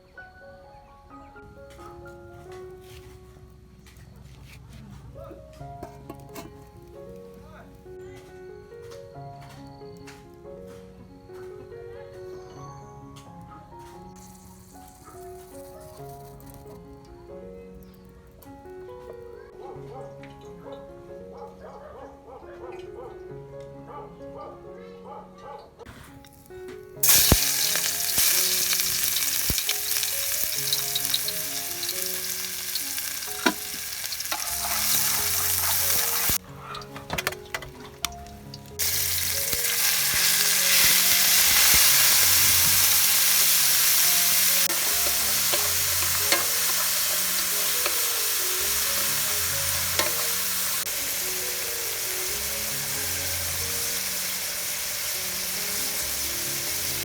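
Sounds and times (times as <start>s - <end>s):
food sizzling in a hot pan: 14.1s - 16.7s, 26.3s - 57.0s.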